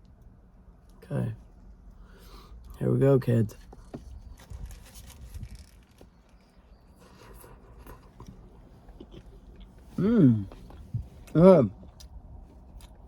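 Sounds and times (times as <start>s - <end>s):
person chewing food: 7.0s - 13.0s.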